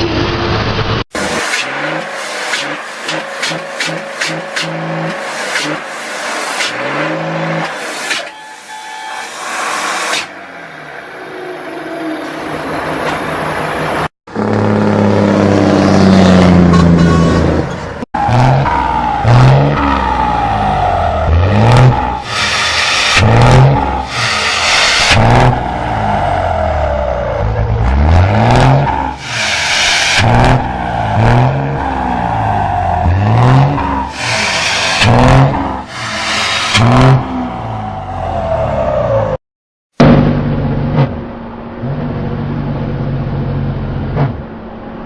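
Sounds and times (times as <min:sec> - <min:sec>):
engine revving hard: 0:18.2 - 0:39.4.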